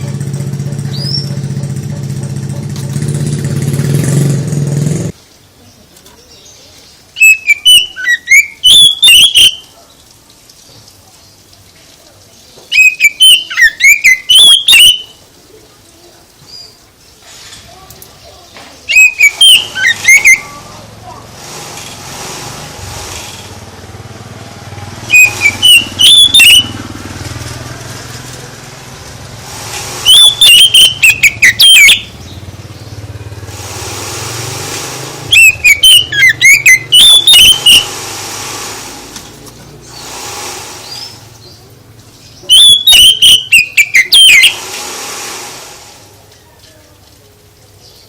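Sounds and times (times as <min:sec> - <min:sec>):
songbird singing: 0:00.0 - 0:02.0, 0:05.1 - 0:21.2, 0:25.1 - 0:26.9, 0:30.0 - 0:33.3, 0:35.3 - 0:38.0, 0:40.8 - 0:44.6, 0:46.2 - 0:48.0.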